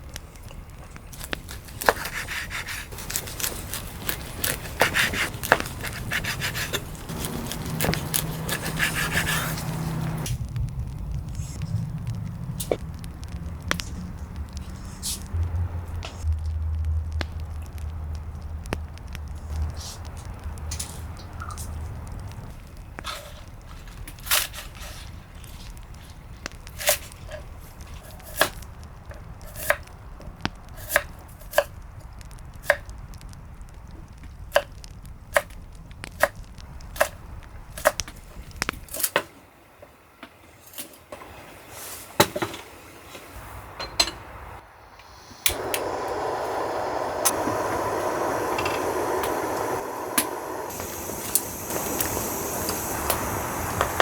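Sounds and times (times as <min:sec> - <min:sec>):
steady hiss: 0:00.0 - 0:54.0
knife chopping on wooden board: 0:01.8 - 0:09.6.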